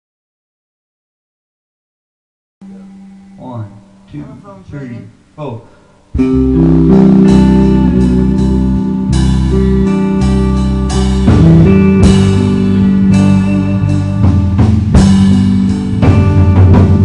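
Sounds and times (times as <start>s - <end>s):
guitars: 2.6s - 5.0s, 6.1s - 17.0s
drum kit beat: 6.1s - 17.0s.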